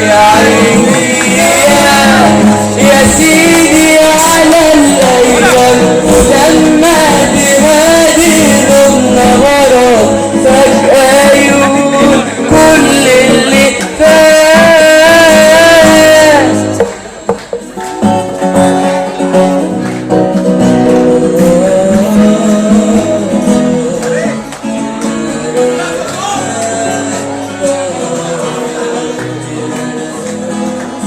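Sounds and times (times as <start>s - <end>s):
instrumental pop music: 0.0s - 31.0s.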